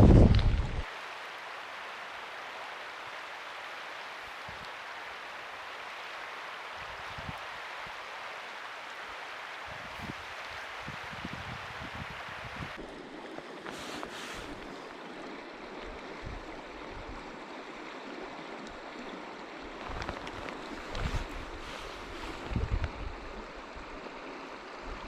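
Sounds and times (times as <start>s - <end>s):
wind buffeting microphone: 0.0s - 0.9s, 9.7s - 12.8s, 19.8s - 23.9s
river water rushing: 0.8s - 25.0s.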